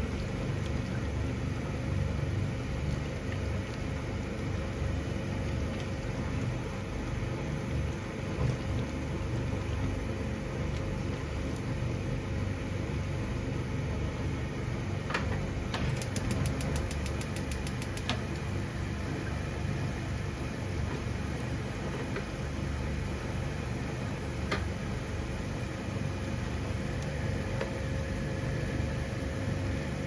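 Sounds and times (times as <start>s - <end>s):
low mechanical hum: 0.0s - 30.0s
quick ticks: 16.0s - 18.2s.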